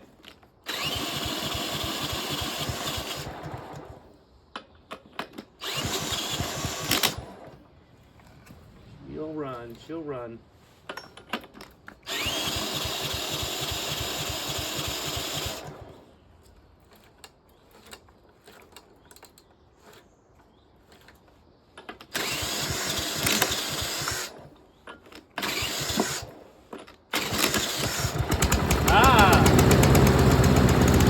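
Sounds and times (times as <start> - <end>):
power drill spinning engine: 0.4 - 4.2, 5.6 - 7.7, 11.9 - 19.0, 22.0 - 31.0.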